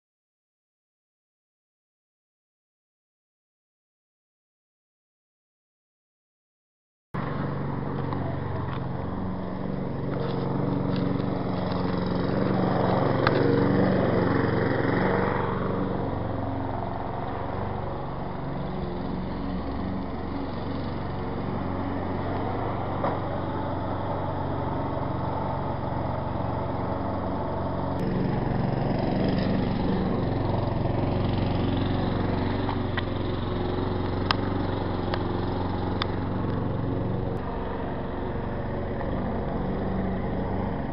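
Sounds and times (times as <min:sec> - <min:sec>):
lawn mower engine running: 0:07.2 - 0:40.9.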